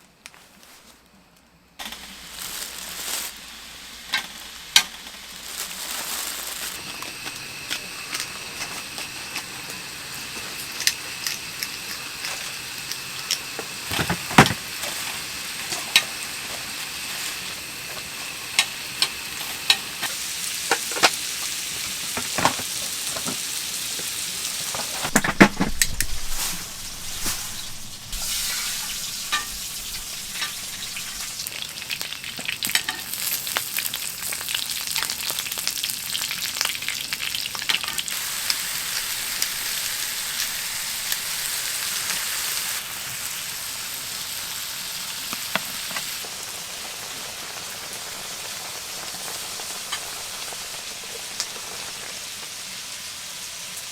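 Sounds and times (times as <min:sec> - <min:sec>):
food sizzling in a pan: 0:01.8 - 0:53.9.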